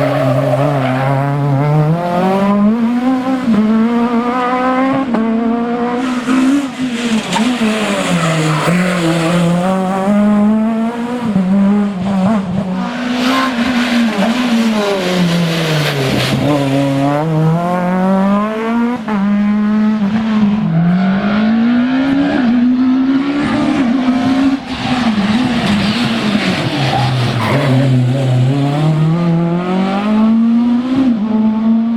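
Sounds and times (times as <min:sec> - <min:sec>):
rally car engine revving: 0:00.0 - 0:31.9.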